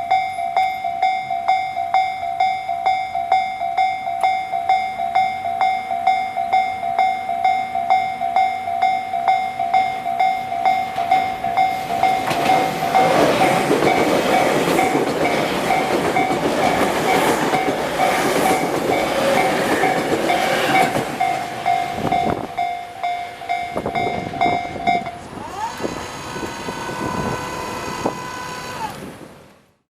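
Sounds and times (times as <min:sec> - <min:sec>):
level crossing warning bell: 0:00.0 - 0:25.4
train wheels passing: 0:00.0 - 0:29.7
rising whine: 0:16.6 - 0:29.2.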